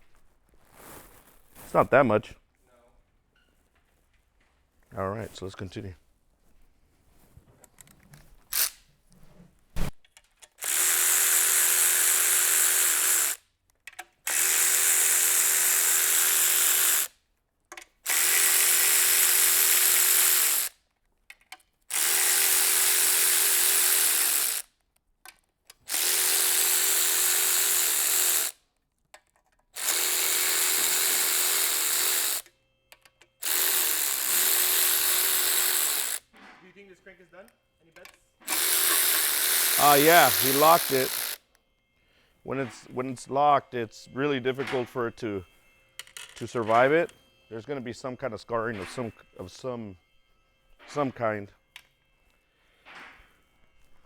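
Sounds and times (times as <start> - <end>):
power drill bursts: 8.5 - 8.8, 10.6 - 13.4, 14.2 - 17.1, 18.0 - 20.8, 21.9 - 24.7, 25.9 - 28.6, 29.8 - 32.5, 33.4 - 36.3, 38.4 - 41.4.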